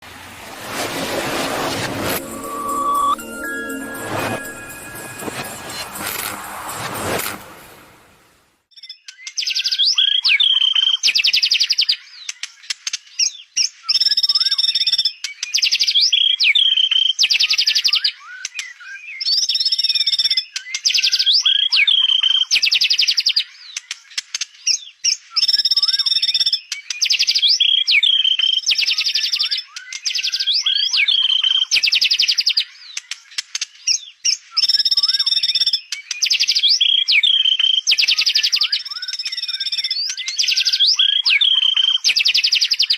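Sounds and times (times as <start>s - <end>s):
songbird whistling and trilling: 25.4s - 33.0s, 33.9s - 42.9s.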